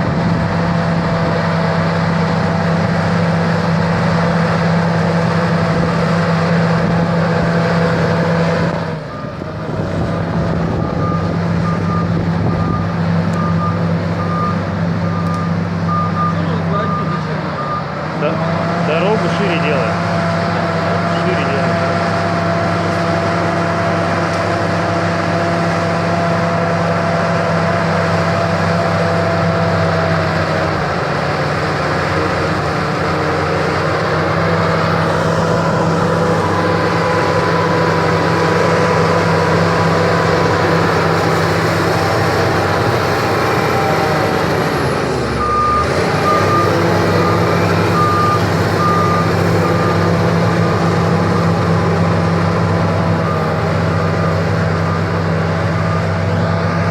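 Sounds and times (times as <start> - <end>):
bulldozer diesel engine: 0.0 - 56.9
reverse alarm beeping: 10.8 - 18.4, 45.4 - 52.0.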